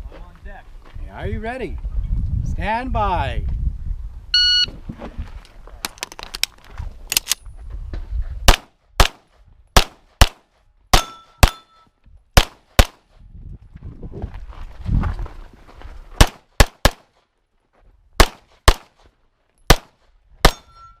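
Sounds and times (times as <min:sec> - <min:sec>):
shot timer beep: 0:04.4 - 0:04.7
pistol shots: 0:08.5 - 0:09.2, 0:09.8 - 0:11.7, 0:12.4 - 0:13.0, 0:16.2 - 0:17.1, 0:18.2 - 0:18.9, 0:19.7 - 0:20.7
metallic ring of steel targets: 0:11.0 - 0:11.9, 0:20.4 - 0:21.0.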